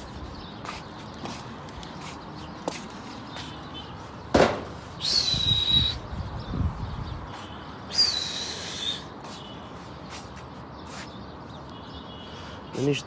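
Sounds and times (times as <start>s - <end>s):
sharp knock or clap: 4.4s - 4.8s
shrill whistles: 5.0s - 6.1s, 7.9s - 9.1s.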